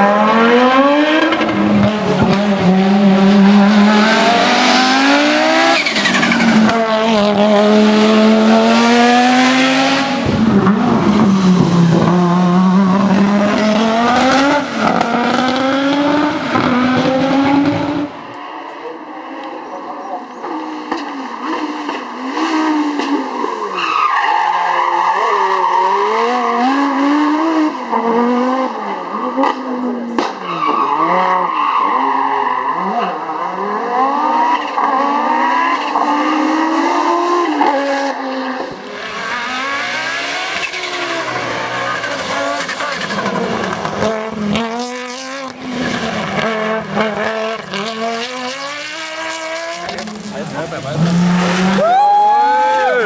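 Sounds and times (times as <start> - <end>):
rally car engine revving: 0.0 - 53.0
exhaust cracks: 1.1 - 18.4, 37.4 - 51.9.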